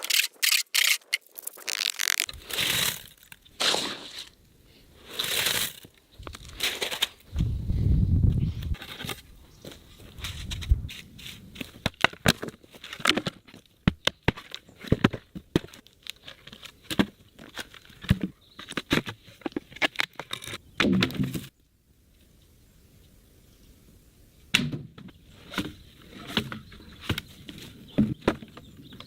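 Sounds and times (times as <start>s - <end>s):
wood splintering: 0.0s - 3.9s.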